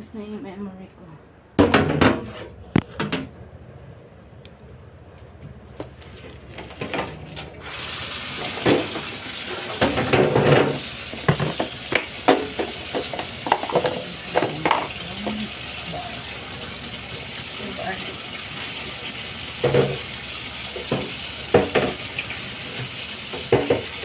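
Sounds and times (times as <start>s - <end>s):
dishes clattering in a sink: 1.6s - 3.3s, 8.3s - 16.4s, 18.6s - 24.0s
tap running: 5.1s - 24.0s.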